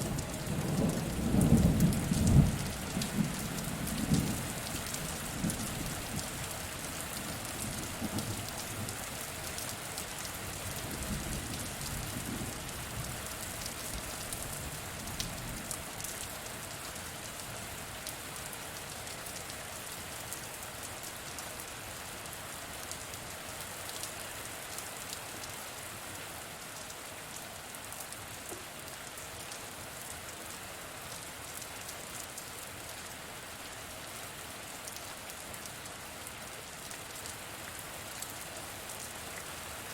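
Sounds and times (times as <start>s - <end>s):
low rumble of thunder: 0.0s - 6.4s, 7.4s - 8.9s, 10.9s - 13.2s
steady rain falling: 0.0s - 39.9s.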